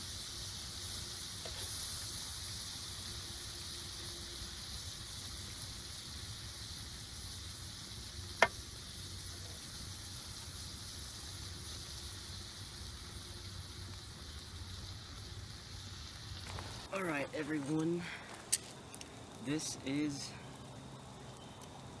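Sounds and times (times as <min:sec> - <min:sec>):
fish sizzling in a skillet: 0:00.0 - 0:17.0.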